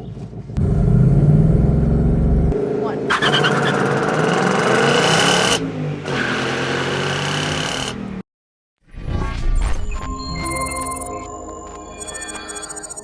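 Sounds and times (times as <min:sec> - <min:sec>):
car engine running loud: 0:00.6 - 0:08.2.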